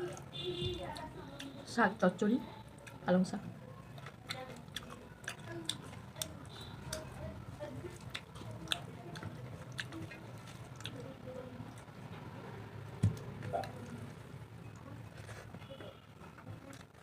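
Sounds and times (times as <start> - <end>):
person chewing food: 2.6 - 12.1.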